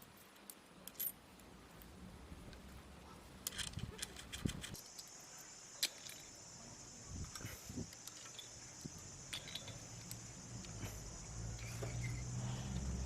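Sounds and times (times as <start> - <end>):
steady high hiss: 0.0 - 13.0
metallic clicks of hand tools: 3.4 - 5.1, 7.2 - 10.8.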